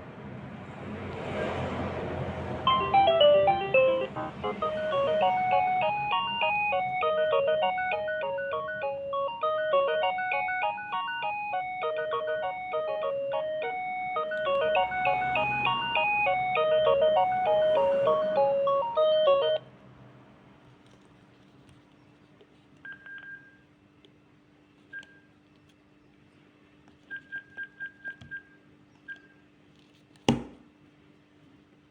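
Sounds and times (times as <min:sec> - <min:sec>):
cordless phone ringtone: 0:02.7 - 0:19.6.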